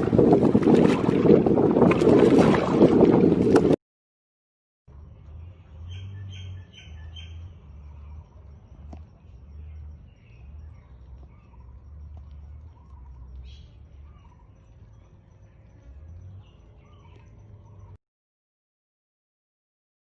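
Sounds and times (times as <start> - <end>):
wind noise on microphone: 0.0 - 3.8
birds chirping: 4.9 - 18.0
faint low rumble: 4.9 - 18.0.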